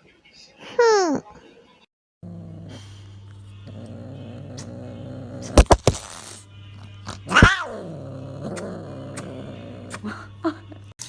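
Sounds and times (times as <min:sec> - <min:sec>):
background music: 0:02.2 - 0:10.9
cat meowing: 0:07.3 - 0:07.7.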